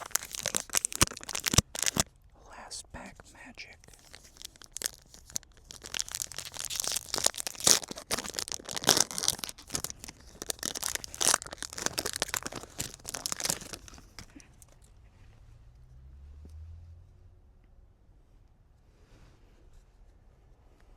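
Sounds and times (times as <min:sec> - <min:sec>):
wrapper crinkling: 0:00.0 - 0:02.1, 0:03.7 - 0:14.8
wrapper ripping: 0:00.0 - 0:02.1, 0:03.8 - 0:14.5.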